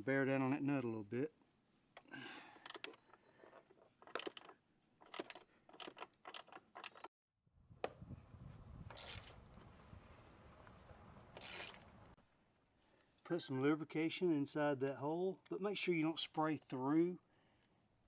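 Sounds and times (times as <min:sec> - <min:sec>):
wrench and ratchet clicking: 0:02.6 - 0:07.1, 0:11.4 - 0:11.9.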